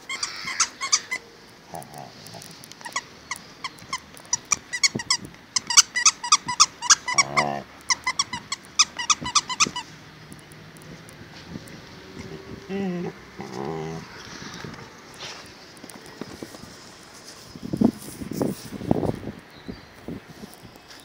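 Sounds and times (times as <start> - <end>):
dog squeaking: 0.0 - 1.2, 1.8 - 9.9
dog growling: 1.7 - 2.6, 7.0 - 7.7, 12.2 - 14.2.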